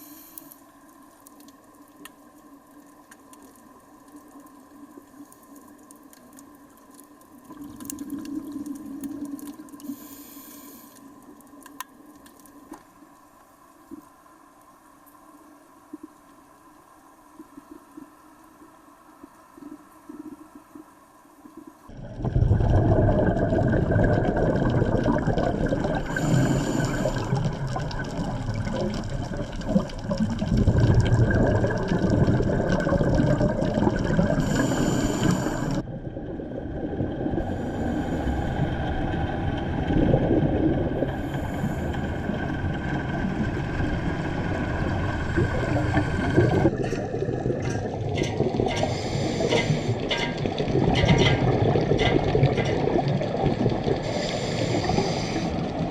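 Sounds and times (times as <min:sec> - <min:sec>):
rushing gurgling water: 0:21.9 - 0:55.9.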